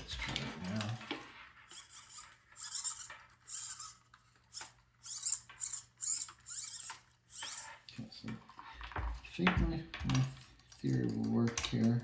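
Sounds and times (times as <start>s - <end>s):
robot high squeaks and rubbing: 1.6s - 7.8s.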